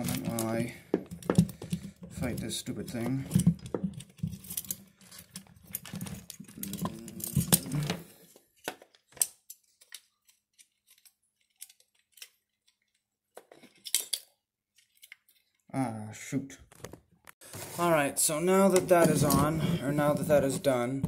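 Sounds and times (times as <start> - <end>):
small metal parts clicking: 9.3 - 15.6.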